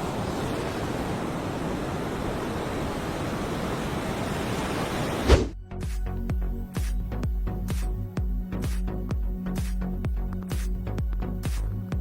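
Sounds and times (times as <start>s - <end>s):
heavy surf breaking: 0.0s - 5.6s
wind: 0.0s - 5.6s
loud thump: 5.2s - 5.6s.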